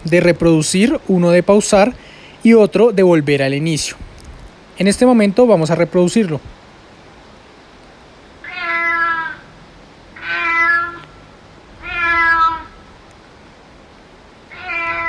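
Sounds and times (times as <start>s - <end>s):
recorded cat meowing: 8.4s - 9.4s, 10.2s - 11.1s, 11.8s - 12.8s, 14.5s - 15.0s.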